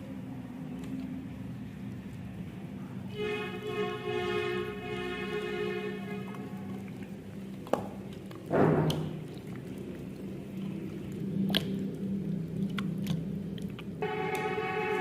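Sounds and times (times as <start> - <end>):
low steady hum: 0.0 - 15.0
wet squish of food: 5.2 - 15.0.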